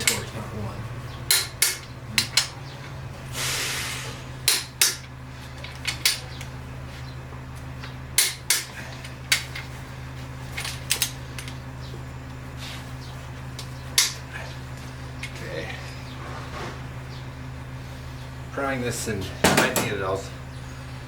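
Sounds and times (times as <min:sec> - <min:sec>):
steady low hum: 0:00.0 - 0:21.0
short hiss: 0:03.4 - 0:04.2.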